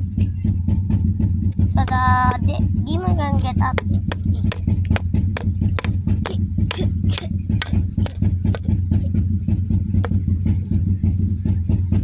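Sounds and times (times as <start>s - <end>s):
sharp clicks and taps: 3.4s - 4.6s, 5.8s - 8.7s.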